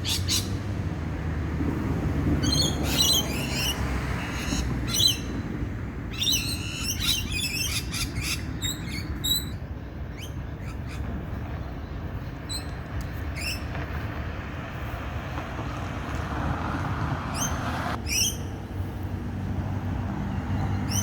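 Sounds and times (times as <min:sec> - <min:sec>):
birds chirping and trilling: 0:00.0 - 0:00.7, 0:02.3 - 0:13.7, 0:17.3 - 0:18.6, 0:20.2 - 0:21.0.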